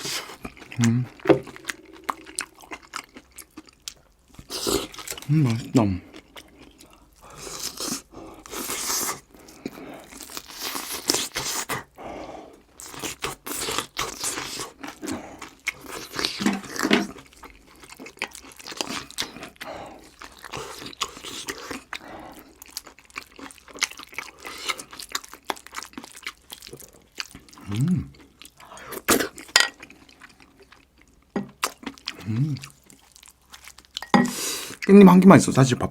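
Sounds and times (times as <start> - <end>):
chewing crisp fried food: 0.0 - 12.0, 12.6 - 35.2.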